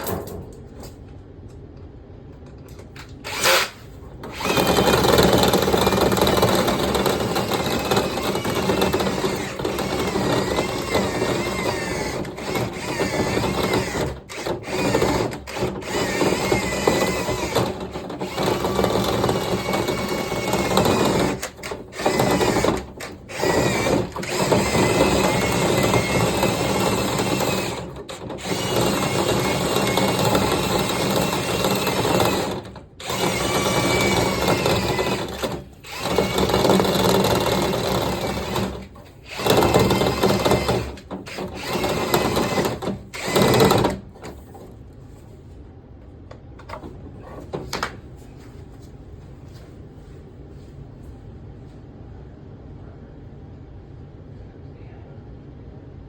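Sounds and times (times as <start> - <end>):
power drill spinning brush in duct: 4.4 - 22.6, 23.3 - 43.6.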